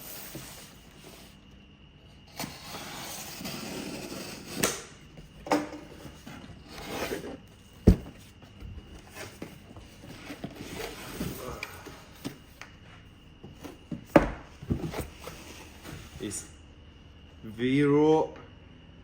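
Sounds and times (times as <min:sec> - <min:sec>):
knocks and thumps: 0:07.8 - 0:09.5.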